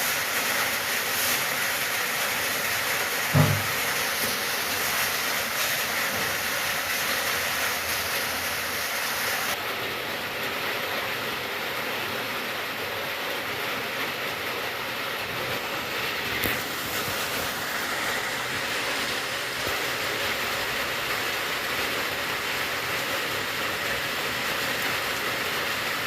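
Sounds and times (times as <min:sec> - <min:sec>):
steady rain falling: 0:00.0 - 0:26.0.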